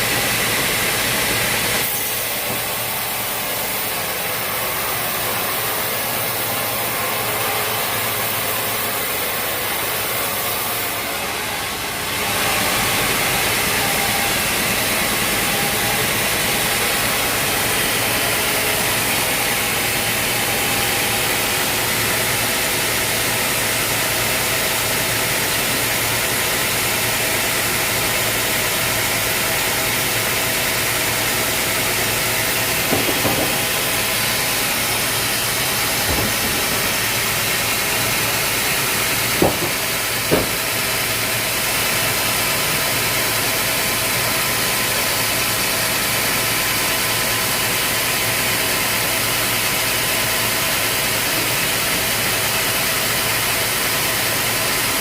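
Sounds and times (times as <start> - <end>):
sawmill machinery drone: 0.0 - 55.0
short knocks: 32.9 - 33.7, 39.4 - 40.6.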